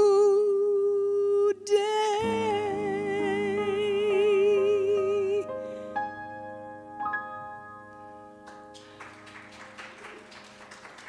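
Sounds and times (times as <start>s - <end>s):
woman singing with vibrato: 0.0s - 5.5s
sustained piano chords: 2.2s - 11.0s.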